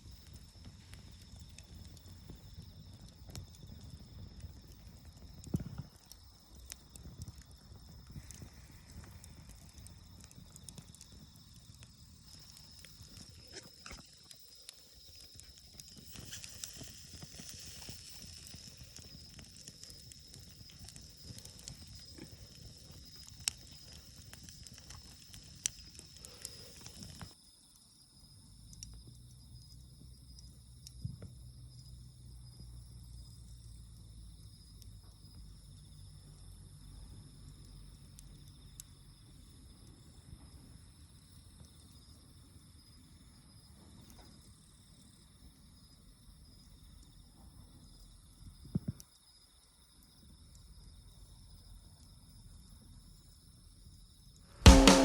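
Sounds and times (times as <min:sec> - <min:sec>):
campfire crackling and popping: 0:00.0 - 0:27.4
fire rumble: 0:00.0 - 0:27.4, 0:28.2 - 0:49.0
insects chirring: 0:00.0 - 0:55.0.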